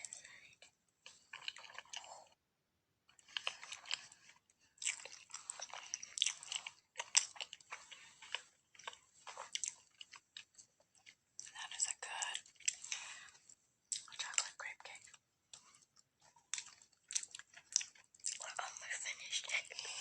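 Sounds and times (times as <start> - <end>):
close chewing mouth clicks: 3.2 - 13.0, 13.9 - 18.6.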